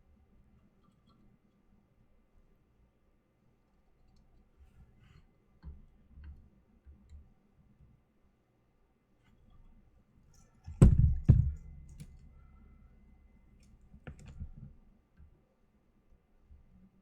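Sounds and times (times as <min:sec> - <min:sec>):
sharp knocks: 0:10.7 - 0:12.2.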